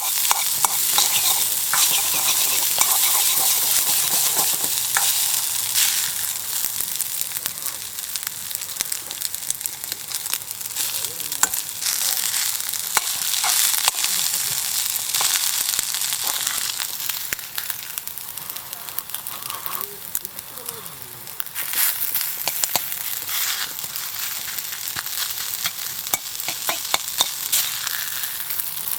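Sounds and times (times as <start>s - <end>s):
utensil clicking and scraping: 0.0s - 5.2s
food sizzling in a pan: 0.0s - 28.9s.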